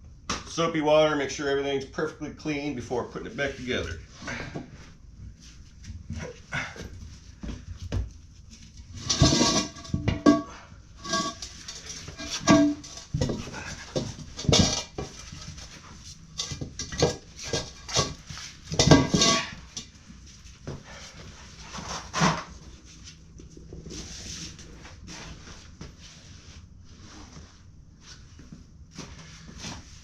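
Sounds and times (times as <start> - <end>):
metal clanks and clatter: 8.7 - 20.0.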